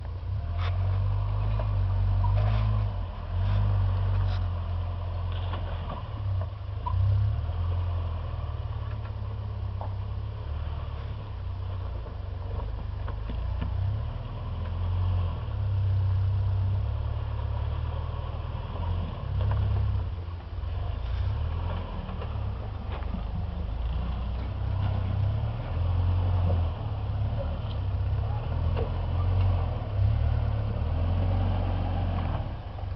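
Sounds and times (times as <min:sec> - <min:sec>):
vehicle engine idling: 0:00.0 - 0:32.9.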